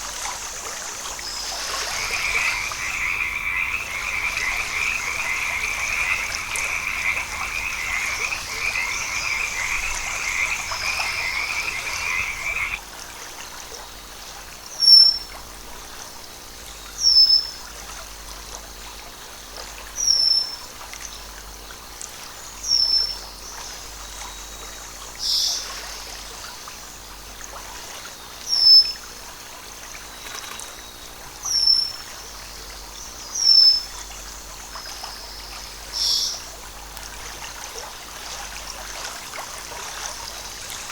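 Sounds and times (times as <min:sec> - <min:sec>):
trilling frog chorus: 0:01.2 - 0:12.8.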